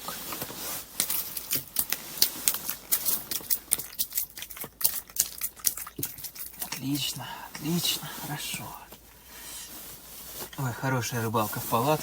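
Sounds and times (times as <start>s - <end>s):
fish flapping wet slaps: 1.0s - 7.0s.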